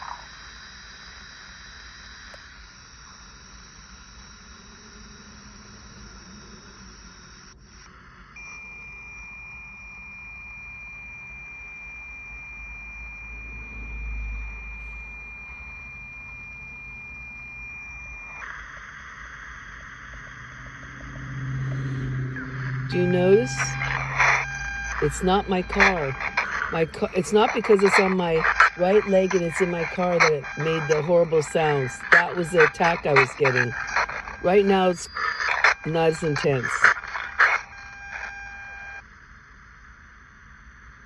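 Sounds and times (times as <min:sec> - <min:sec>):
pure high-pitched tone: 0:08.4 - 0:39.0.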